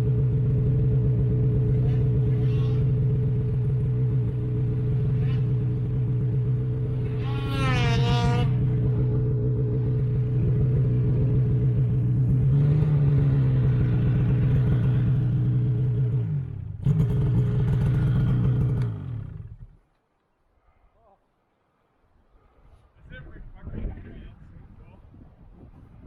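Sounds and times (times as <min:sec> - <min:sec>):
snowmobile engine running: 0:00.0 - 0:19.8.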